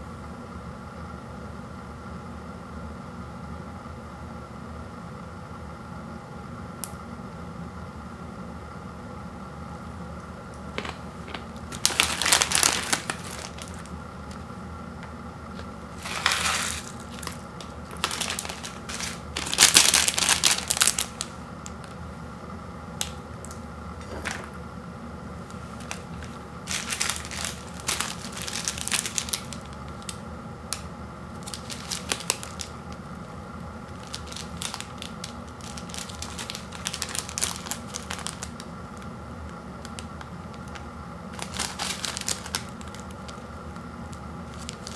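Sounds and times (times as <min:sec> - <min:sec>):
plastic packaging crinkling: 0:10.8 - 0:14.5, 0:15.5 - 0:22.1, 0:23.0 - 0:24.6, 0:25.4 - 0:44.9.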